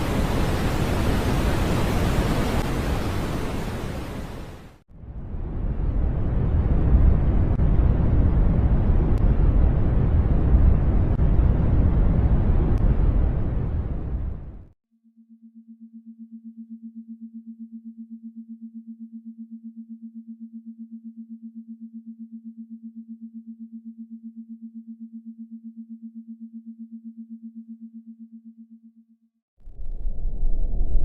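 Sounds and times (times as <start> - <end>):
low pulsing electronic tone: 15.2 - 31.0.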